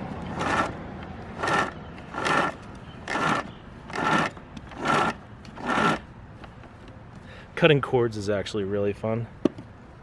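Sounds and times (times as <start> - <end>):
blade sawing through a power cord: 0.2 - 6.1.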